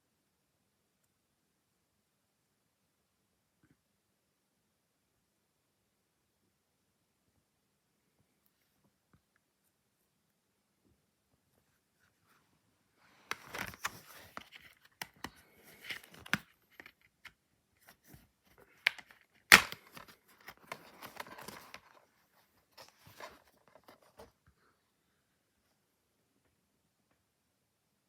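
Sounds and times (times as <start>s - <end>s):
plastic case clicks: 18.9s - 21.8s
plastic packaging tearing and crinkling: 19.5s - 21.8s.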